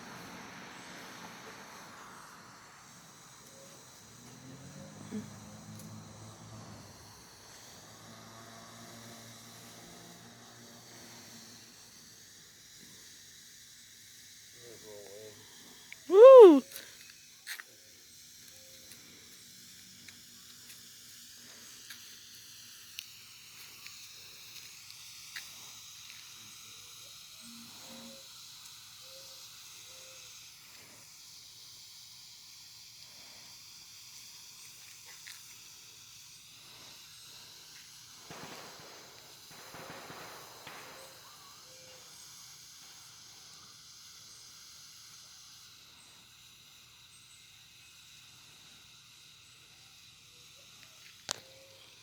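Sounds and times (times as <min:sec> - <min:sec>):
smoke firework hissing: 0:00.0 - 0:52.0
small ticks: 0:04.2 - 0:06.2, 0:22.9 - 0:26.3, 0:34.6 - 0:35.7, 0:50.6 - 0:52.0.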